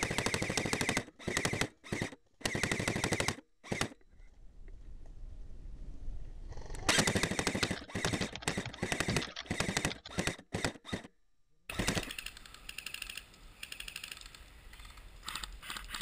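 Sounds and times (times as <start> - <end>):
airsoft guns firing bursts: 0.0 - 4.0, 6.9 - 11.1, 11.7 - 12.2.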